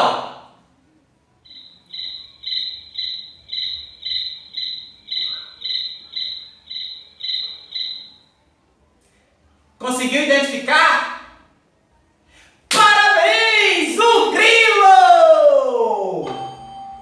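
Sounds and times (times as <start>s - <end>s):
cricket chirping: 1.4s - 8.4s.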